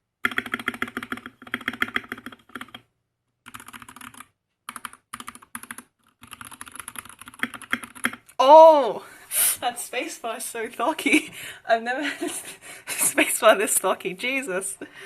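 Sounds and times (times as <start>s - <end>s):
fast typing on mechanical keyboard: 0.2s - 8.3s.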